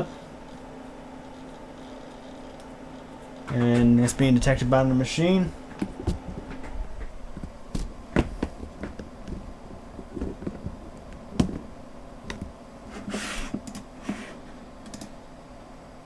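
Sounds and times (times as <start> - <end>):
faint low hum: 0.0 - 16.0
computer mouse clicks: 13.5 - 13.9, 14.8 - 15.2.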